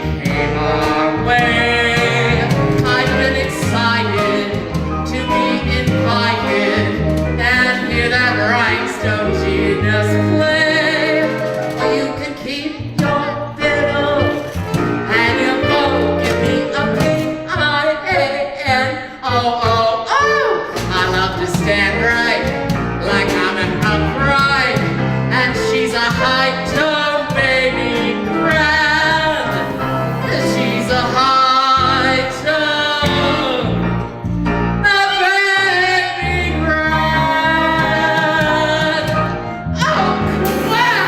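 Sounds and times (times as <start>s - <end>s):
piano accompaniment: 0.0s - 41.0s
soprano singing operatic notes: 23.0s - 33.8s, 39.8s - 41.0s.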